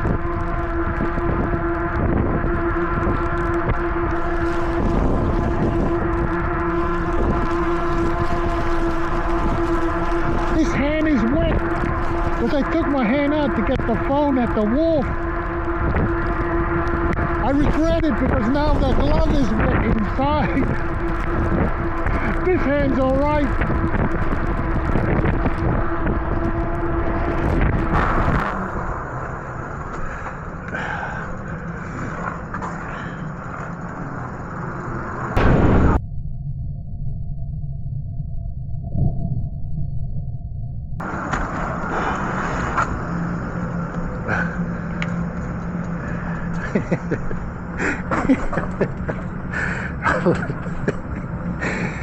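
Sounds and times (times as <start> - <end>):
e-bike rumble: 0.0 - 36.0, 40.8 - 52.0
road and tyre noise: 0.0 - 36.0, 41.0 - 52.0
wind buffeting microphone: 0.0 - 36.0
steady hum: 0.0 - 52.0.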